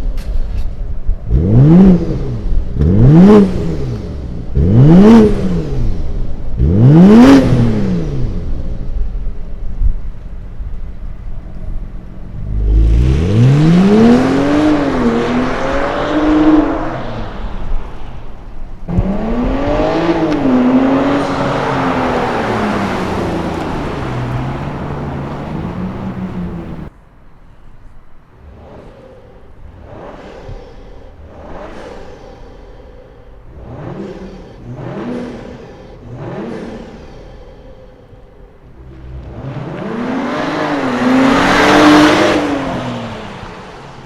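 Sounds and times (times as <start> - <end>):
car engine accelerating hard: 1.2 - 9.3, 11.3 - 18.0, 18.8 - 26.9, 33.4 - 37.4, 38.6 - 44.0
quiet engine note pulsing: 18.9 - 26.9.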